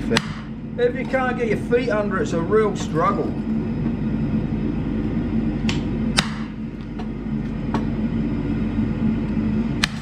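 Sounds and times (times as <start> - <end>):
steady low hum: 0.0 - 10.0
hammer striking hot metal: 0.1 - 0.6, 5.7 - 6.6, 9.8 - 10.0.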